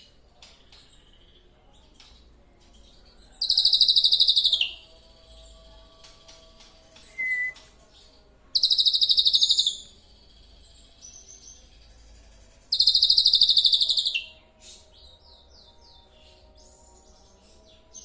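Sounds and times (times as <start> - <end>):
soft bird chirps: 0.0 - 17.7
songbird trilling: 7.1 - 7.6
bird whistle: 7.2 - 7.6.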